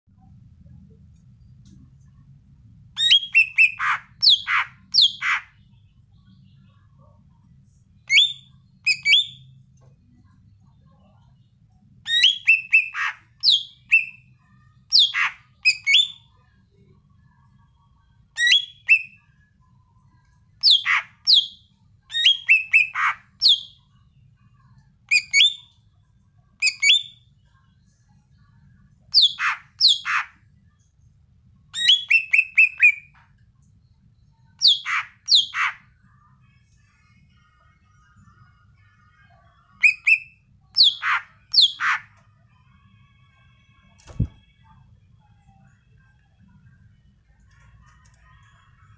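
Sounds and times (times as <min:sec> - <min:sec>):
bird singing whistled notes: 0:03.0 - 0:05.4, 0:08.1 - 0:09.5, 0:12.1 - 0:14.2, 0:31.8 - 0:33.1, 0:39.8 - 0:42.0.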